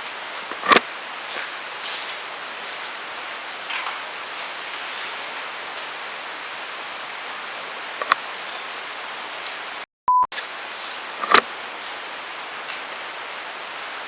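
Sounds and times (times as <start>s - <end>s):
steady hiss: 0.0s - 9.8s, 10.4s - 14.0s
sharp click: 11.2s - 11.4s.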